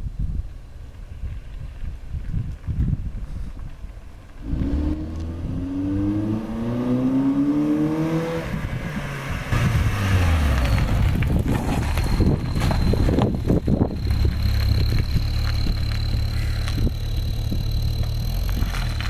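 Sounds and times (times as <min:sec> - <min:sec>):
exhaust and road noise rush: 0:00.0 - 0:19.0
car engine accelerating with whistle: 0:04.4 - 0:19.0.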